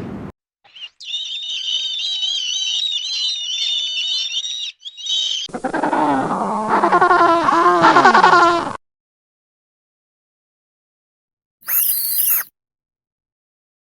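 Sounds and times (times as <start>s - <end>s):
high-pitched wavering animal calls: 0.7s - 5.8s, 11.6s - 12.5s
lower-pitched animal call: 11.6s - 12.5s.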